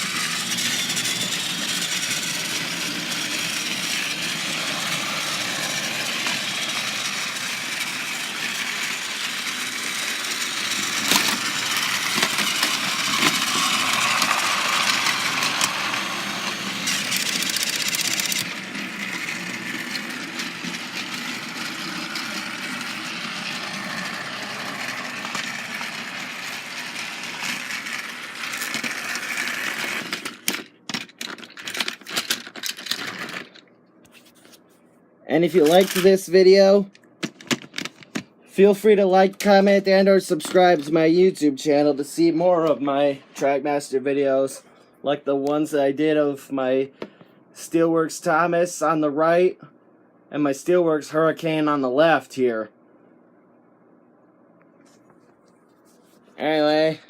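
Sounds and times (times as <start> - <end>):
toy train motors whirring: 0.0 - 33.6, 35.4 - 36.3
toy train wheels rattling: 0.0 - 33.6, 35.5 - 36.2.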